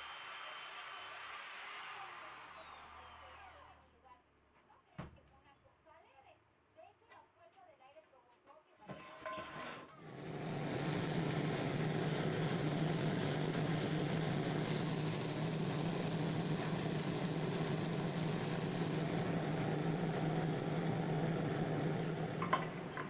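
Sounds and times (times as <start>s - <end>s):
machine humming: 10.0s - 23.0s.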